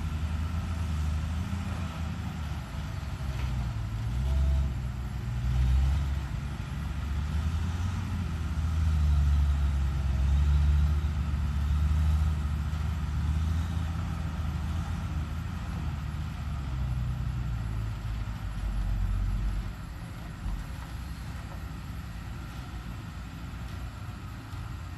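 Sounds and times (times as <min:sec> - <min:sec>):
excavator diesel engine working: 0:00.0 - 0:24.9.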